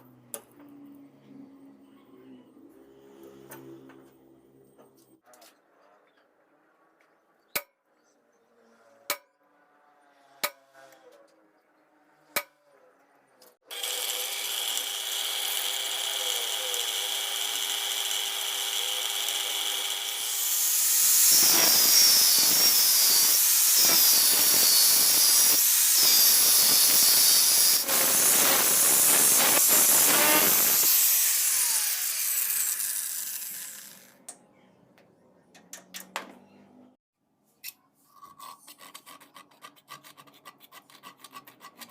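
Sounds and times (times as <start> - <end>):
grinder grinding steel: 12.4 - 34.3
power grinder whining: 13.6 - 34.2.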